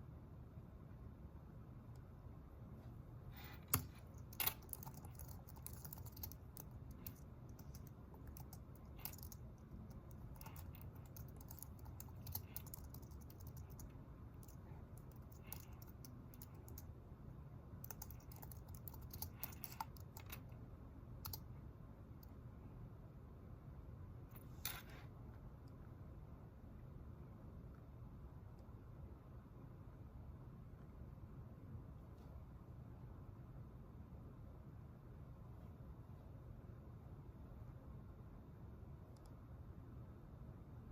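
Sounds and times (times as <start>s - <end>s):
low room hum: 0.0s - 40.9s
quiet keyboard typing: 3.3s - 17.1s, 17.7s - 21.6s.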